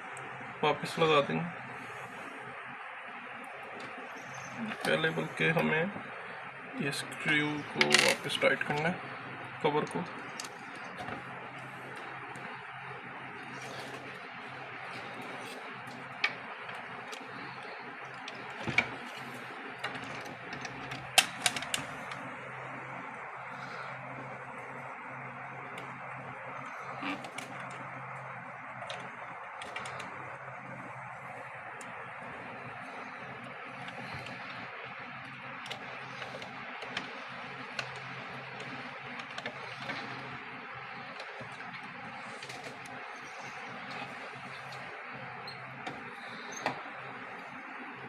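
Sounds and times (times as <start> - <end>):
steady low hum: 0.0 - 48.0
small parts clicking and tapping: 7.3 - 8.9, 10.0 - 22.3, 25.6 - 47.7.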